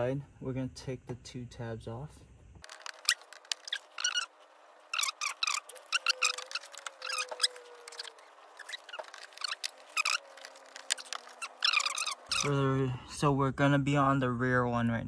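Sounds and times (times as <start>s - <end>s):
plastic clips squeaking: 2.6s - 12.5s.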